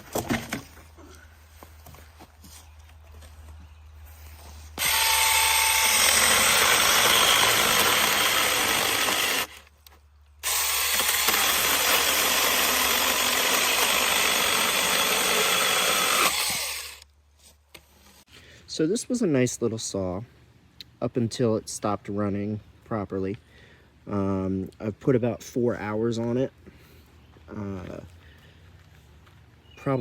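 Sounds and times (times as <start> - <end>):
electric mini chainsaw running: 4.8 - 9.6, 10.4 - 17.0.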